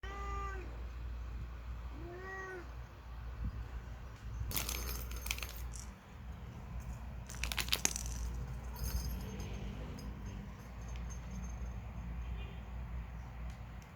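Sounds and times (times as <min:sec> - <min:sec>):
cat meowing: 0:00.0 - 0:00.8, 0:01.9 - 0:02.8.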